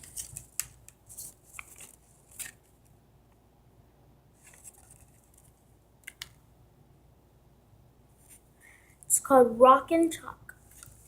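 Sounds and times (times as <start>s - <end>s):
paper and plastic rustling: 0.0s - 2.9s, 4.4s - 5.6s, 10.6s - 11.0s.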